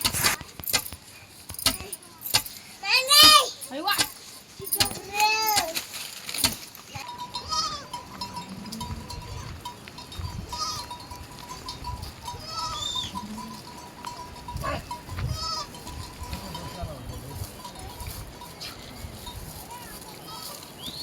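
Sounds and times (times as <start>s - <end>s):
goats bleating: 7.2s - 9.7s, 10.5s - 11.0s, 12.2s - 16.8s, 19.7s - 20.7s.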